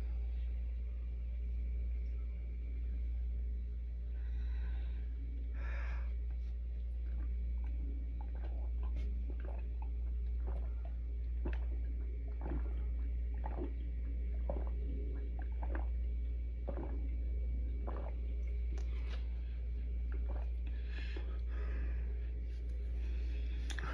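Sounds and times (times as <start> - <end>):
steady low hum: 0.0 - 23.9
mouth and throat sounds: 6.4 - 19.5, 20.1 - 21.5
person gulping water: 7.0 - 19.4, 20.0 - 21.5, 23.6 - 23.9.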